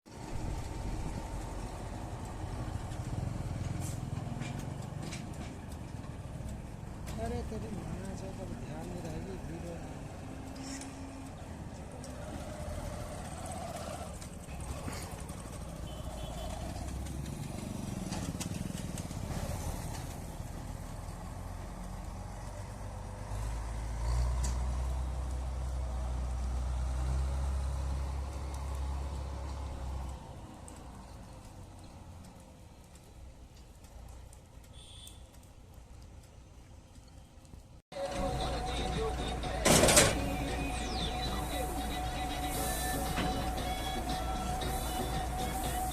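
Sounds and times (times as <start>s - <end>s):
combine harvester engine running: 0.1s - 30.3s, 38.0s - 45.9s
combine harvester engine humming: 38.0s - 45.9s.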